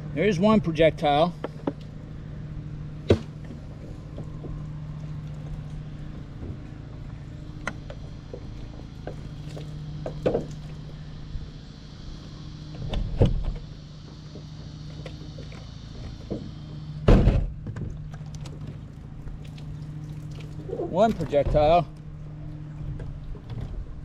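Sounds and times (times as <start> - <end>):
low mechanical hum: 0.0 - 24.0
heavy thump: 17.0 - 17.8.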